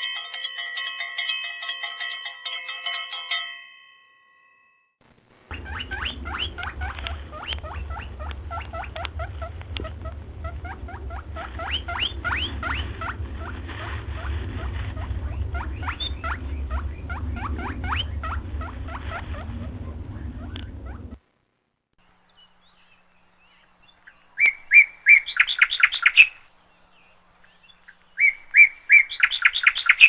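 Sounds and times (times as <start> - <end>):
low rumble: 5.0 - 21.7
birds chattering: 5.5 - 21.2.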